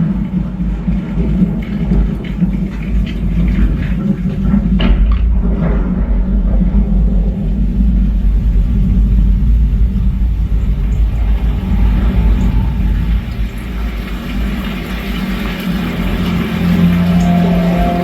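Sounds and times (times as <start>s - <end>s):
deep bass rumble from speakers: 4.4s - 18.0s.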